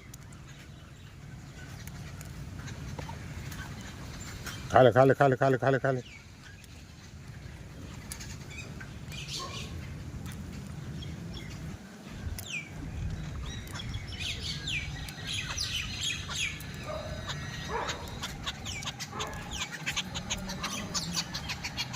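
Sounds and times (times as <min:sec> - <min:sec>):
small birds chirping: 0:00.0 - 0:21.9
steady low rumble: 0:06.0 - 0:21.9.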